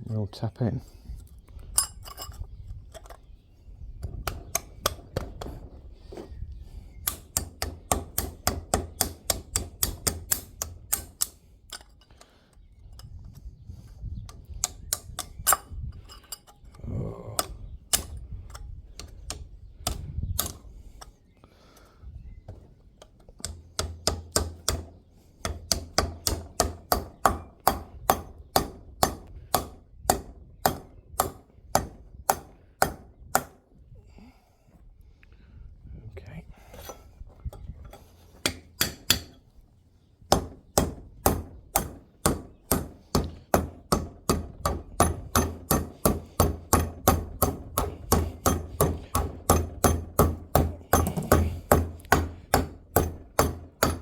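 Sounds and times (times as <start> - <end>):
hammer striking metal: 40.3 - 54.0.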